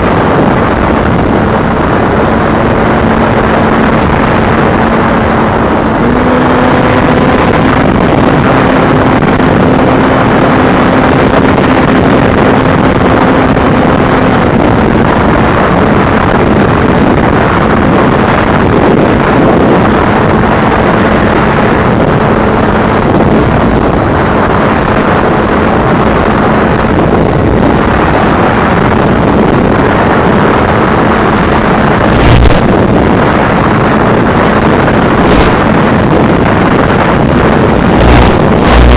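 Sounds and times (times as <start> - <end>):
drone motors buzzing: 30.8 - 33.3, 34.5 - 38.9.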